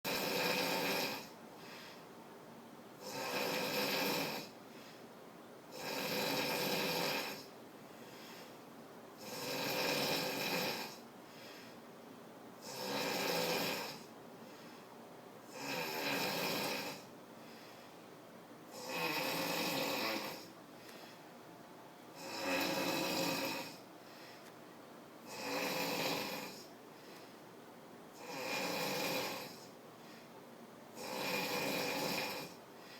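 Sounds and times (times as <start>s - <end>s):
loud snoring: 0.1s - 1.3s, 3.0s - 4.6s, 5.7s - 7.5s, 9.2s - 11.0s, 12.6s - 14.1s, 15.5s - 17.1s, 18.7s - 20.5s, 22.2s - 23.8s, 25.3s - 26.7s, 28.2s - 29.7s, 31.0s - 32.6s.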